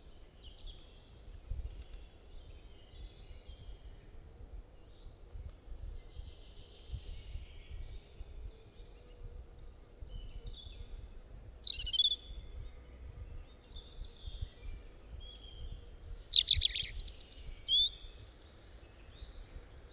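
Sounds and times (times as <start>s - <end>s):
robin singing: 6.1s - 19.9s.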